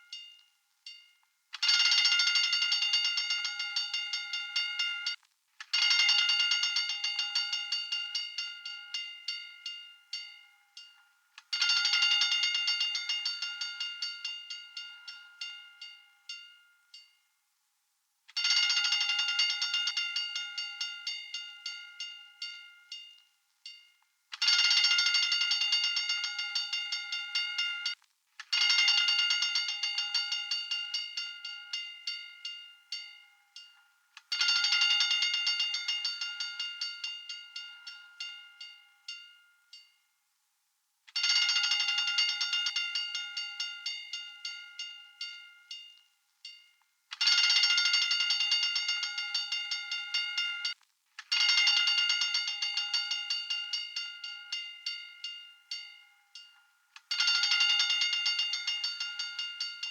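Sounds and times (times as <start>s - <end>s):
fire alarm bell ringing: 1.6s - 5.2s, 18.4s - 28.0s, 28.6s - 39.8s, 41.2s - 59.9s.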